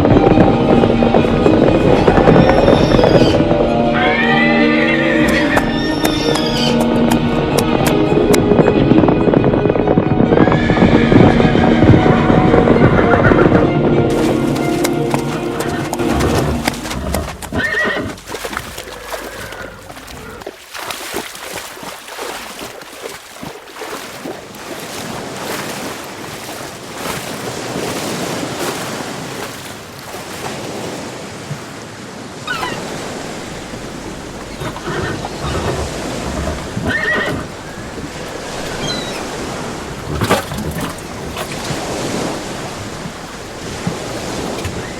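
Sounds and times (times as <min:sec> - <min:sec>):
horse whinnying: 0:02.3 - 0:06.8, 0:15.3 - 0:20.5, 0:32.5 - 0:32.9, 0:34.4 - 0:40.9.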